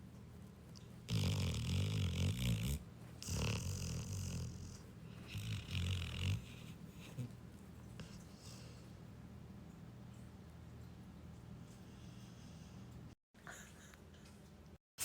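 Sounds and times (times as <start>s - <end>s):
dog snoring: 1.1s - 7.3s.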